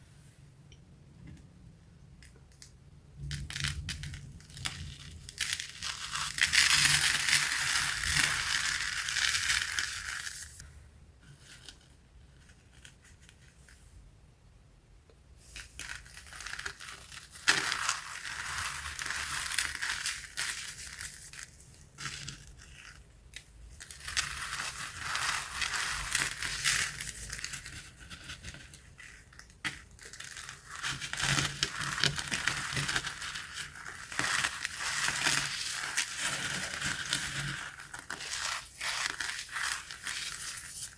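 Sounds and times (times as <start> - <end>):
cornstarch chunks crunching: 29.4 - 40.8.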